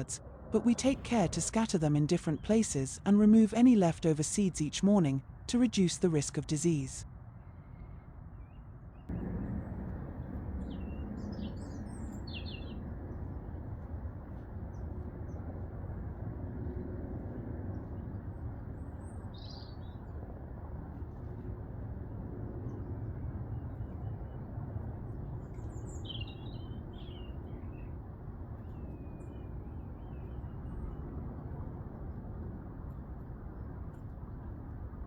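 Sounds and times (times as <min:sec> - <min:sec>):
low background rumble: 0:00.0 - 0:07.0, 0:09.0 - 0:35.0
birds chirping: 0:10.6 - 0:12.8.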